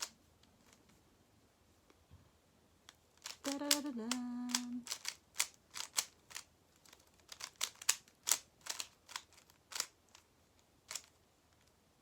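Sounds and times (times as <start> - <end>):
speed cube clicking: 3.2 - 10.2, 10.9 - 11.7.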